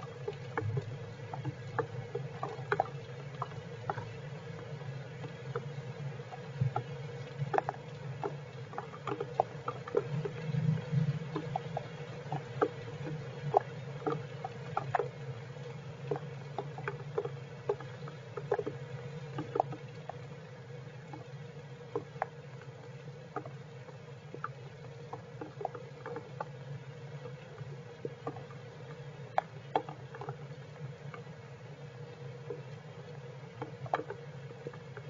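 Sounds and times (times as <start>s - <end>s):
faint rain hiss: 0.0s - 35.0s
rain drip taps: 0.0s - 35.0s
steady low hum: 0.0s - 35.0s.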